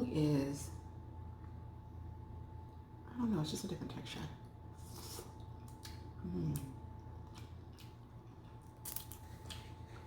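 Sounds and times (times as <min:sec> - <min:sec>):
wet chewing and lip smacks: 0:07.0 - 0:10.0.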